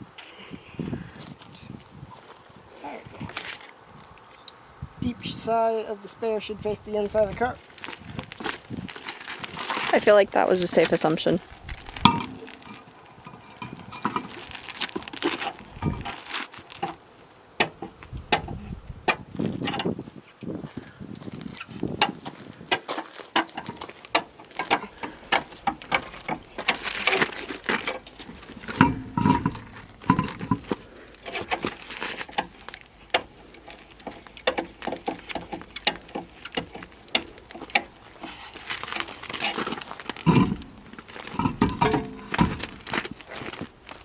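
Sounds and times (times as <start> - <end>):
clicks and knocks of tire changing: 10.7 - 17.0, 17.6 - 20.0, 21.8 - 44.0.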